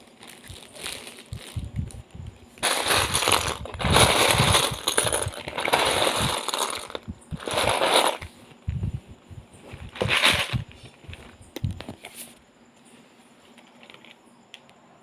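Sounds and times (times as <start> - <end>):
plastic bricks clattering: 2.6 - 8.3, 9.9 - 10.7.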